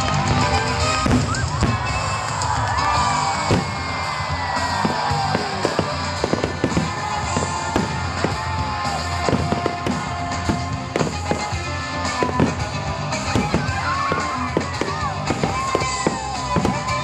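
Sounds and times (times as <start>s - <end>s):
fireworks crackling pops: 0.0s - 17.0s
music playing: 0.0s - 17.0s.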